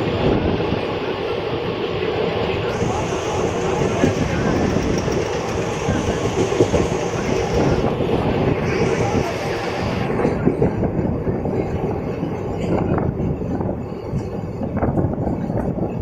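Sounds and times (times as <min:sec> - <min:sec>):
train wheels rumbling on rails: 0:00.0 - 0:16.0
high hiss: 0:02.7 - 0:10.1.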